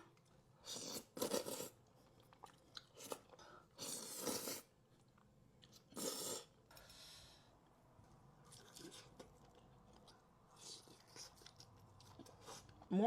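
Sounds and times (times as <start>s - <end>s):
crunchy food chewing: 8.4s - 12.9s.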